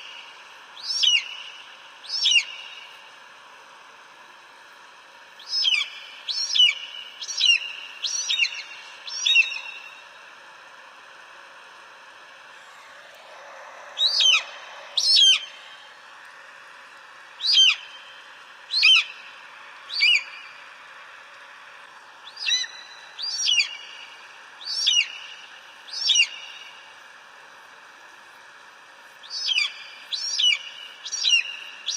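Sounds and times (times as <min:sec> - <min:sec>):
background hiss: 0:00.0 - 0:31.9
eagle calling: 0:00.8 - 0:02.9, 0:05.5 - 0:10.0, 0:13.4 - 0:15.8, 0:17.4 - 0:18.1, 0:18.7 - 0:19.3, 0:19.9 - 0:20.5, 0:22.3 - 0:24.0, 0:24.7 - 0:25.3, 0:26.0 - 0:26.6, 0:29.3 - 0:31.9.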